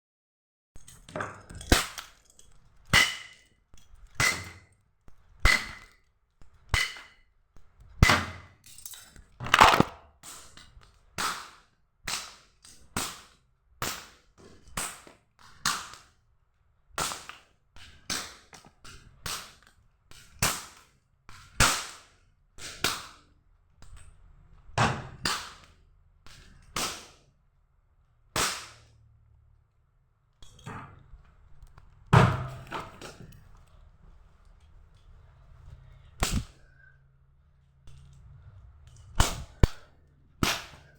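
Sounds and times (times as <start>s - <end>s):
belt cracking against floor: 8.8s - 10.0s.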